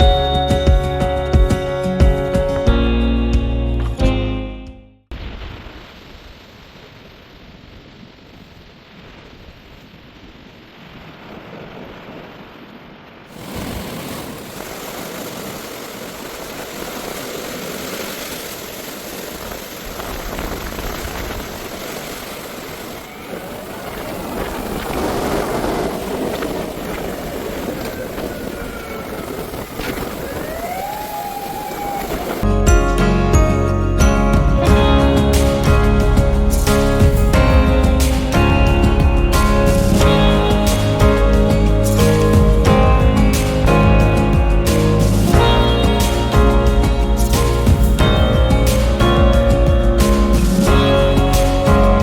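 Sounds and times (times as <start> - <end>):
wind: 5.1 - 52.0.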